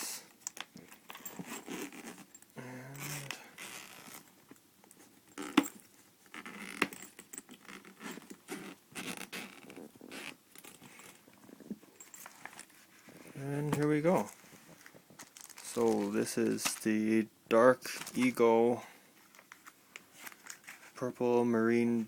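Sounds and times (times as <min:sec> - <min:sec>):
rustling: 0:00.0 - 0:17.1, 0:17.8 - 0:21.2
zipper: 0:01.1 - 0:04.3, 0:05.3 - 0:13.3.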